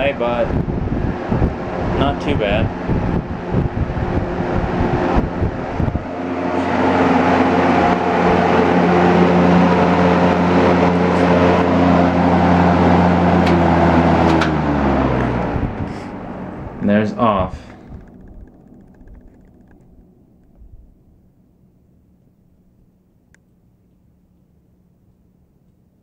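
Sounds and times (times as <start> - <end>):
air buffeting microphone: 0.0 - 21.2
fan motor hum: 0.0 - 26.0.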